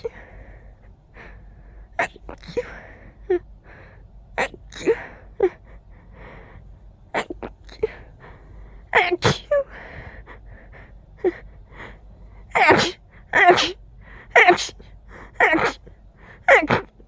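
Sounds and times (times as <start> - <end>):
quick breaths: 5.0 - 6.9, 7.8 - 8.9, 9.6 - 16.5
person sneezing: 9.0 - 9.7, 12.5 - 17.0.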